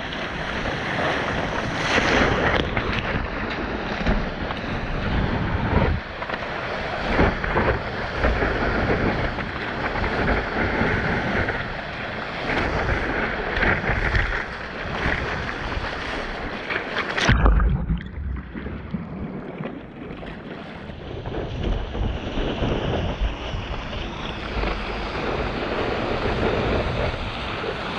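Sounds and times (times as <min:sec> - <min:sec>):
rushing water and surf: 0:00.0 - 0:27.9
wind buffeting microphone: 0:00.0 - 0:27.9
loud thump: 0:17.2 - 0:19.0.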